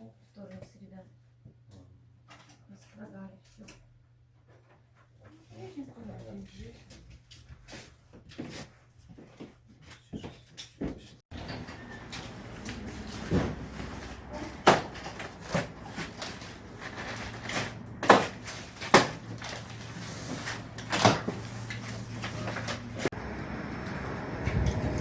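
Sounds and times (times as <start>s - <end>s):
low hum: 21.5s - 25.0s.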